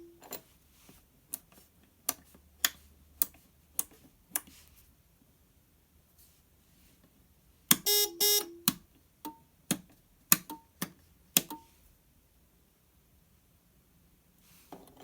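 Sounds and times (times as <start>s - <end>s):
short buzzy beeps: 7.9s - 8.6s.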